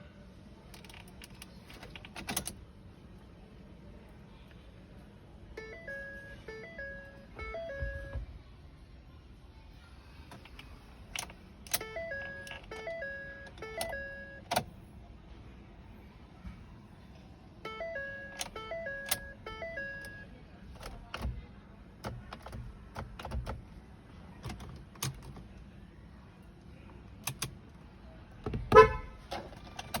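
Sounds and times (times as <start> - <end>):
car warning chime: 5.6 - 8.3, 11.7 - 14.6, 17.6 - 20.3.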